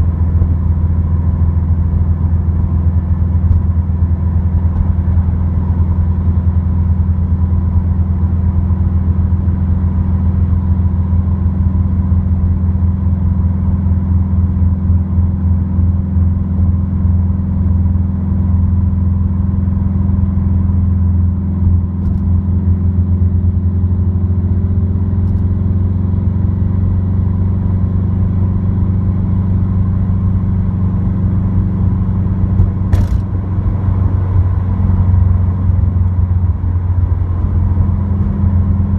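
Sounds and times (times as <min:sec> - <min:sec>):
car engine droning in cabin: 0:00.0 - 0:38.9
sharp click: 0:22.0 - 0:22.3, 0:32.6 - 0:33.3.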